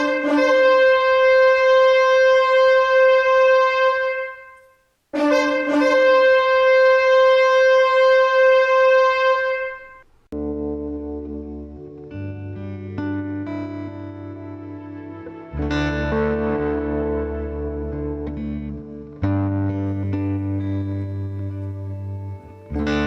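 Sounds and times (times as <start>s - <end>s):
horn blasts: 0.0s - 10.2s.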